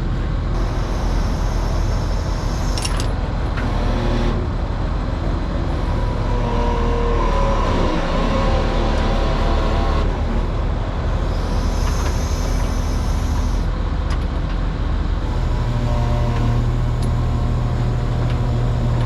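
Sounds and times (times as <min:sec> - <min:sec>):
hydraulic whine: 0:00.0 - 0:14.1, 0:15.1 - 0:19.0
excavator diesel engine running: 0:00.0 - 0:19.0
metallic clink: 0:02.7 - 0:03.2.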